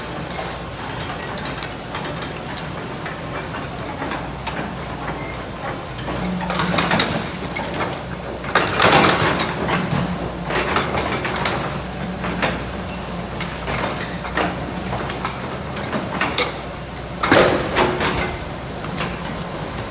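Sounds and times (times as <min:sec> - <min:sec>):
excavator diesel engine running: 0:00.0 - 0:19.9.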